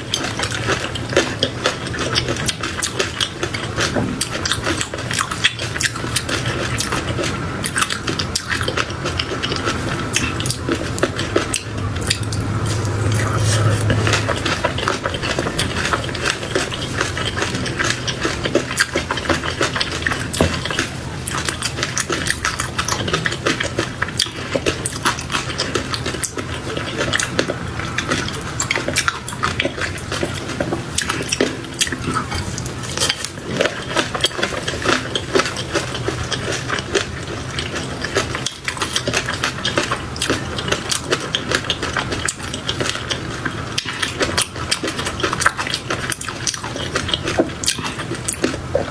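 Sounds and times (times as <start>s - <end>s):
chewing mouth clicks and smacks: 0.1s - 48.9s.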